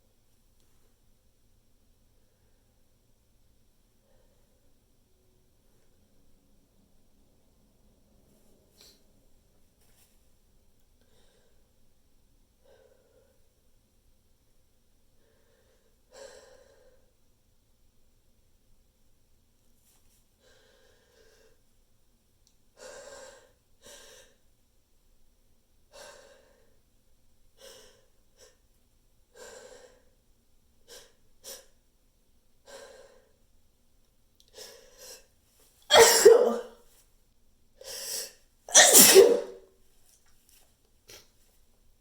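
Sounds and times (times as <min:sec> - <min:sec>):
person sneezing loudly: 0:35.9 - 0:36.7, 0:38.7 - 0:39.6.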